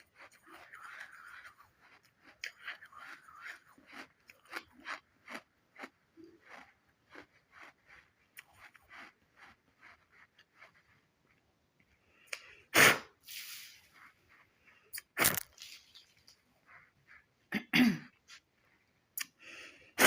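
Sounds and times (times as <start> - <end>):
chewing crunchy clay: 0.0 - 12.6, 14.0 - 17.3.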